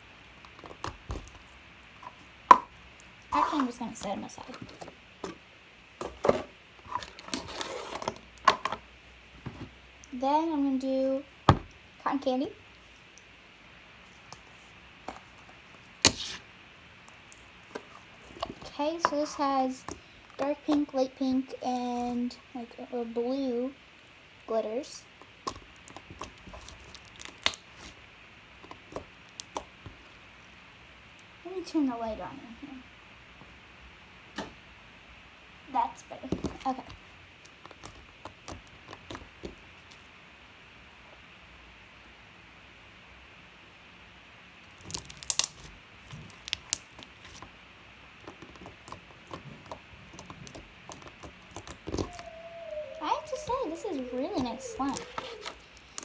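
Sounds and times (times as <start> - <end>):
slime squishing and popping: 25.4 - 28.0, 44.7 - 47.0.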